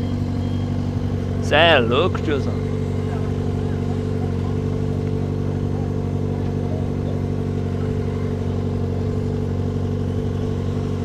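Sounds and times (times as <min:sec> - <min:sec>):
motorcycle engine running steadily: 0:00.0 - 0:11.0.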